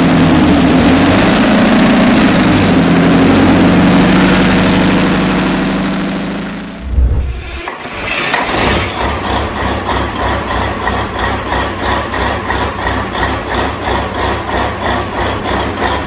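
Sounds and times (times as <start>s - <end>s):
diesel engine running: 0.0s - 16.0s
low rumble: 4.9s - 7.7s.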